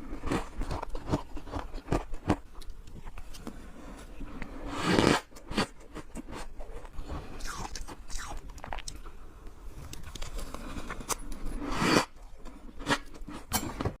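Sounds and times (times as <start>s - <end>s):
frost being chewed crunching: 0.0s - 3.4s, 5.4s - 9.1s.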